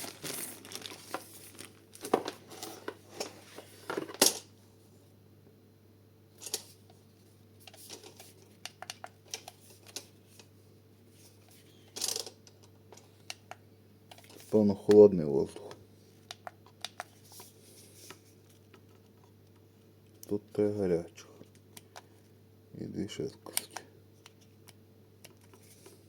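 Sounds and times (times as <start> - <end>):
packaging rustling and knocking: 0.0 - 4.3.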